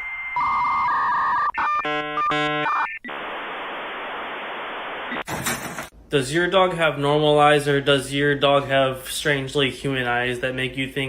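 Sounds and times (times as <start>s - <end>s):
static hiss: 3.1s - 5.3s.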